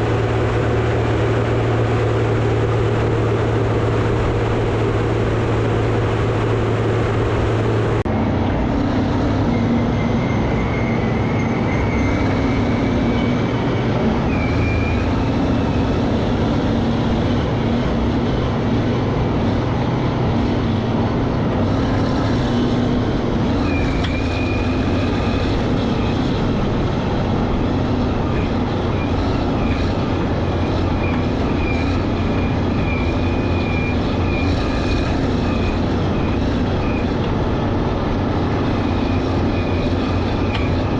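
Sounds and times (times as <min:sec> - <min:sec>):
scraper diesel engines droning: 0:00.0 - 0:40.9
high squeal: 0:09.4 - 0:16.1, 0:23.5 - 0:26.4, 0:30.6 - 0:37.2.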